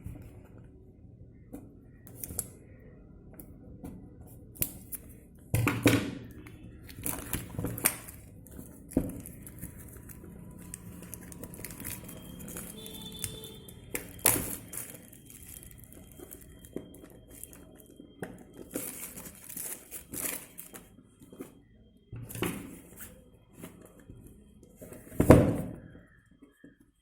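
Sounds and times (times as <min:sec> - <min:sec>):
plastic wrap and cardboard crinkling: 0:06.9 - 0:21.6.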